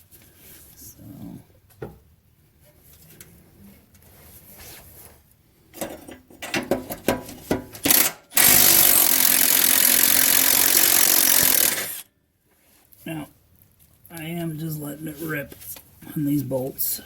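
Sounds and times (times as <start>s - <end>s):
impact wrench running: 7.8s - 12.1s.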